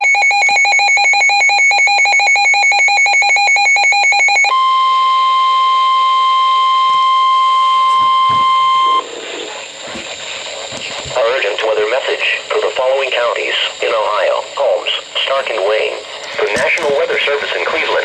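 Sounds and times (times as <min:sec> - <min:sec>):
pulsing electronic alarm beep: 0:00.0 - 0:09.1
radio hiss: 0:06.9 - 0:18.0.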